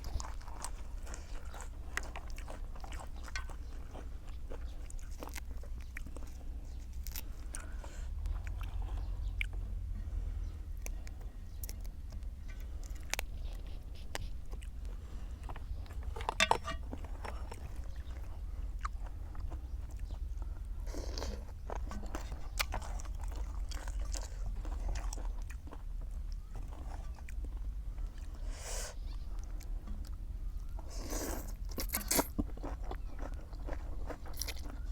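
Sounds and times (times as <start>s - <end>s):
person chewing crunchy food: 0.0s - 34.9s
low hum: 7.1s - 20.9s.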